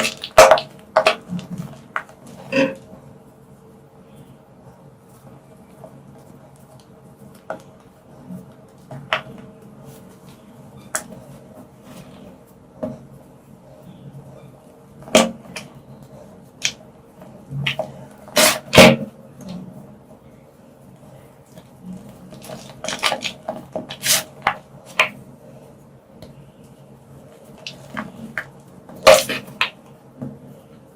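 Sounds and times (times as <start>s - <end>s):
chalk crunching by hand: 22.3s - 25.1s.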